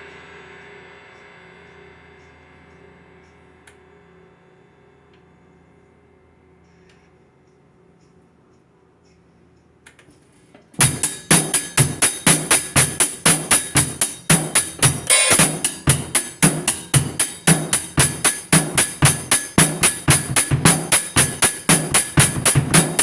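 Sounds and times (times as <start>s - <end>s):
fast drum beat: 10.8s - 23.0s.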